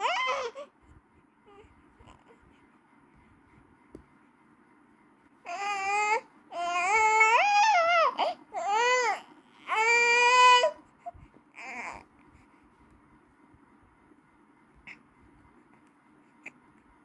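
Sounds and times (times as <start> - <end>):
baby crying: 0.0 - 0.7, 5.5 - 10.8, 11.6 - 12.0
baby whimpering: 0.0 - 0.7, 5.5 - 10.8, 11.6 - 12.0.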